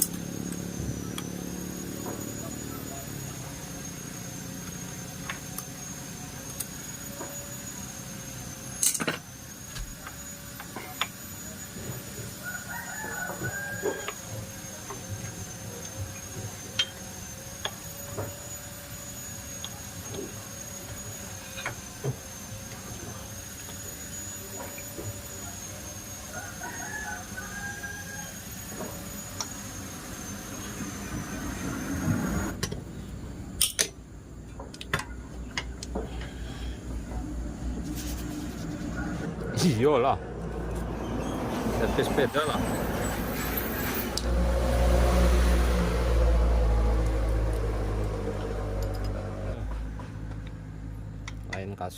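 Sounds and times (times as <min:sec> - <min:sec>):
rooster crowing: 0:12.3 - 0:14.6, 0:26.2 - 0:28.9, 0:38.8 - 0:40.0.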